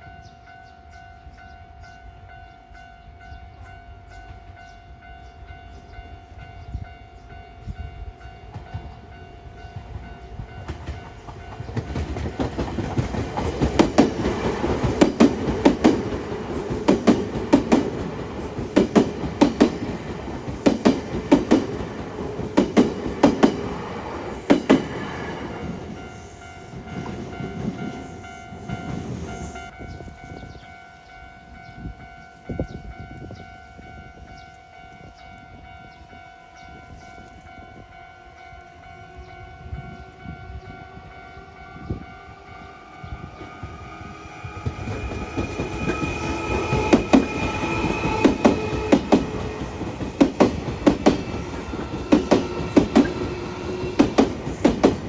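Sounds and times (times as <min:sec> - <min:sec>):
train wheels clacking over rail joints: 0:10.6 - 0:25.1, 0:44.5 - 0:55.0
level crossing warning bell: 0:25.2 - 0:54.8.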